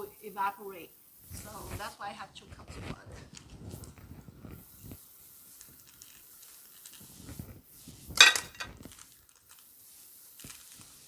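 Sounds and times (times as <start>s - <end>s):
kitchen handling noises: 8.2s - 8.8s.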